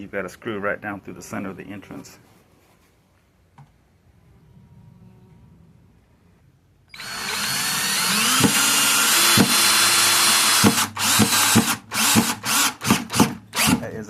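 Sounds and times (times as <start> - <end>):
power drill driving screw into wood: 6.9 - 13.9.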